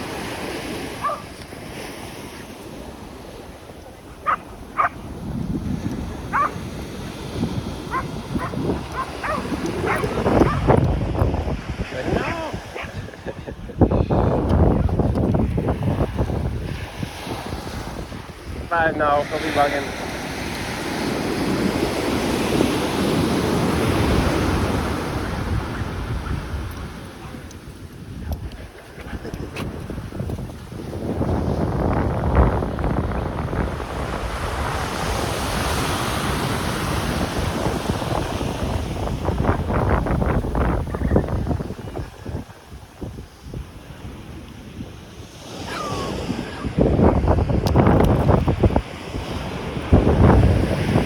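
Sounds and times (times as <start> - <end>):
surf washing onto shore: 0.0 - 51.0
dog barking: 1.0 - 1.3, 4.2 - 5.0, 6.3 - 6.6, 7.9 - 10.7, 12.2 - 13.0
wind noise on microphone: 4.2 - 51.0.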